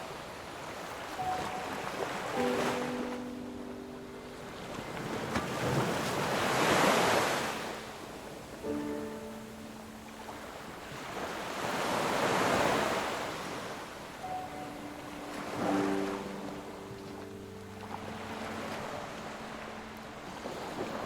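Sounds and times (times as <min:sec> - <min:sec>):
sea waves washing in: 0:00.0 - 0:21.0
soft sustained music notes: 0:01.1 - 0:05.9, 0:07.7 - 0:11.4, 0:14.0 - 0:21.0.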